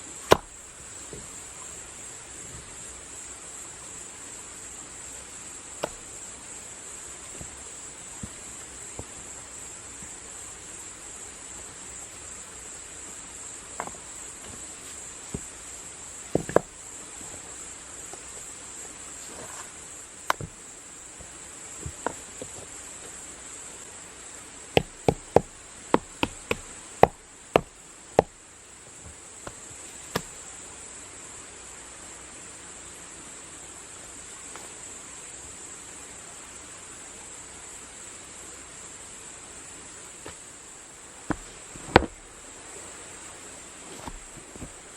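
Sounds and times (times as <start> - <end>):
insect chorus: 0.0 - 44.9
sharp knocks: 0.3 - 1.3, 5.8 - 6.1, 16.4 - 16.7, 20.3 - 20.6, 24.8 - 28.4, 41.3 - 42.3.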